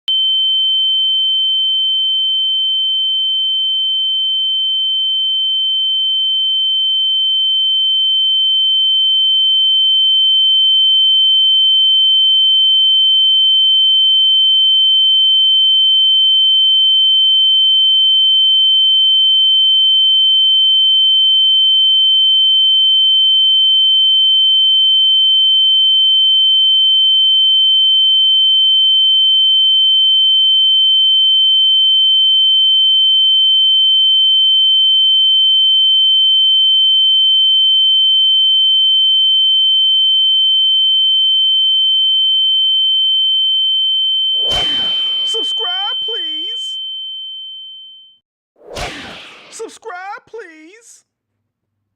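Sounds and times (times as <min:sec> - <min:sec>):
high-pitched ringing tone: 0:44.3 - 0:48.2.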